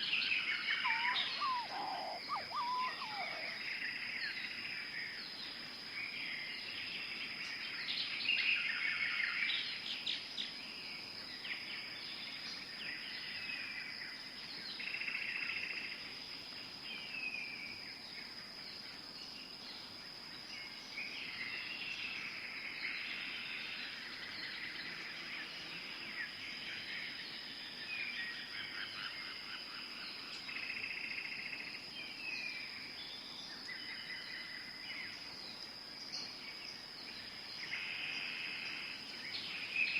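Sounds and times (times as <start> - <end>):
birds chirping: 0.0 - 3.8.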